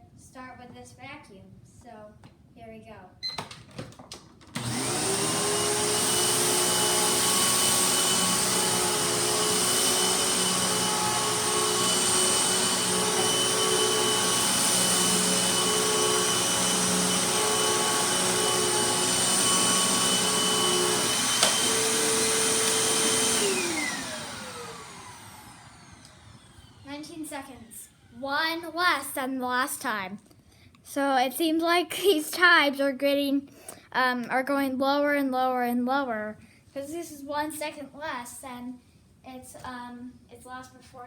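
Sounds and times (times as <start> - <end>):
vacuum cleaner running with high whine: 4.6 - 28.1
vacuum motor spinning down: 4.6 - 28.2.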